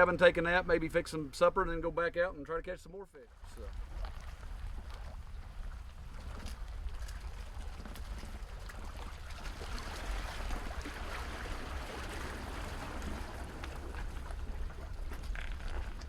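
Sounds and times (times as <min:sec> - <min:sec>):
water trickling and splashing: 0:03.3 - 0:16.0.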